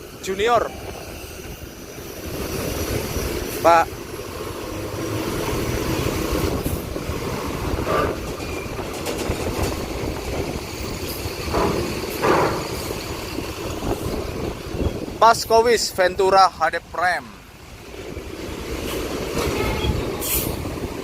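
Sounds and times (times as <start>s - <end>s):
bus engine and tyres rumbling: 0.0s - 21.0s.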